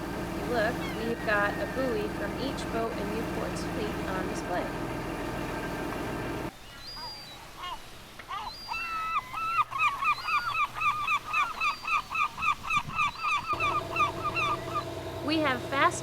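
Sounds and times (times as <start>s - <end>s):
low hum: 0.0s - 6.5s, 13.6s - 16.0s
bird calling: 0.0s - 16.0s.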